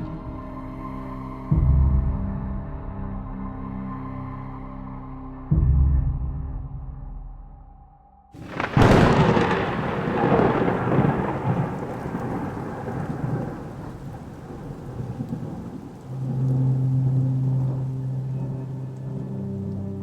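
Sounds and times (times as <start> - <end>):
low musical drone: 0.0 - 7.1, 16.0 - 20.0
steady rain: 8.4 - 20.0
thunder rumbling: 8.4 - 20.0.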